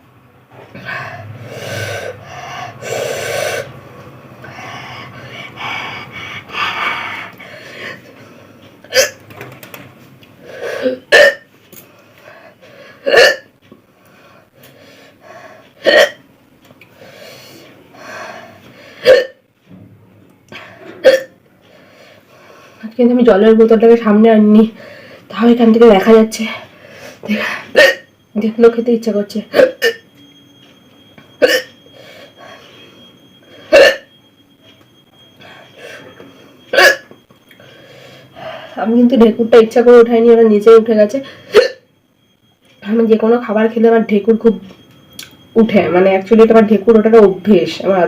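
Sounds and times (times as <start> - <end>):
person hiccuping: 8.8 - 9.2, 10.8 - 11.5, 13.0 - 13.5, 15.8 - 16.2, 19.0 - 19.4, 21.0 - 21.4, 27.7 - 28.1, 29.5 - 30.1, 31.4 - 31.7, 33.7 - 34.1, 36.7 - 37.2, 41.5 - 41.9.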